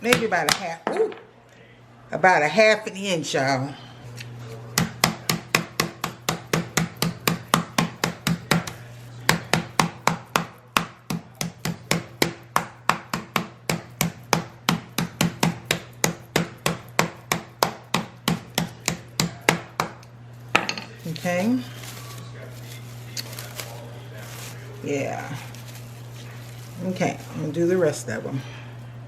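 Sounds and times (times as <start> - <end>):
steady low hum: 0.0 - 29.0
meat being pounded flat: 4.8 - 20.0.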